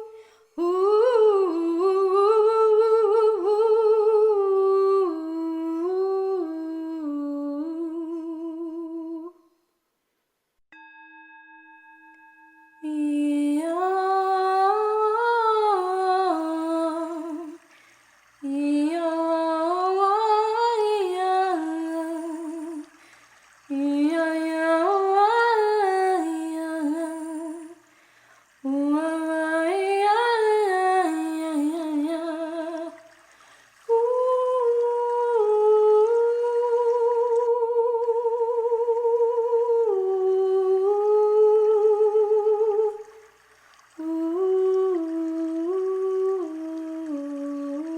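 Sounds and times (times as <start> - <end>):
person humming a slow chant: 44.0 - 47.9.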